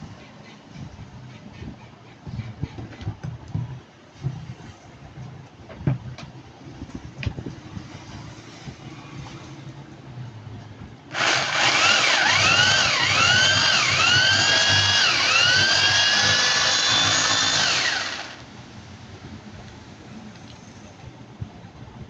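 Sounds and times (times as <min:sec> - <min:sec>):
electric drill whining: 0:11.1 - 0:18.4.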